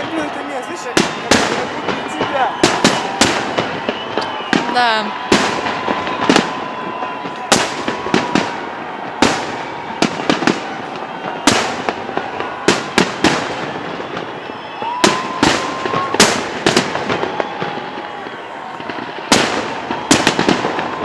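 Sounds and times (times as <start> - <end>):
fireworks bangs with echo: 0.0 - 21.0
thin rising whistle: 0.8 - 8.6.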